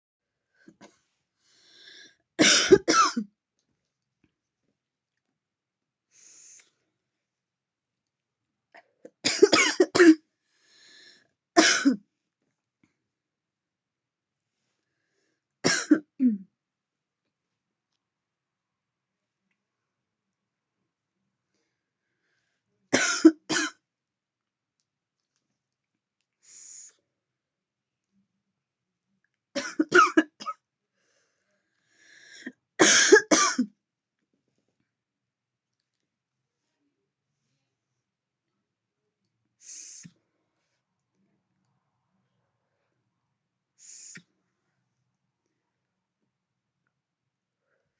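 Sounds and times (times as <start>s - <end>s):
faint breaths: 0.4s - 2.2s, 10.4s - 11.3s, 30.9s - 32.5s
woman coughing: 2.4s - 3.3s, 9.2s - 10.2s, 11.6s - 12.0s, 15.7s - 16.4s, 23.0s - 23.8s, 29.6s - 30.6s, 32.8s - 33.7s
faint vape hiss: 39.6s - 40.2s, 43.8s - 44.3s.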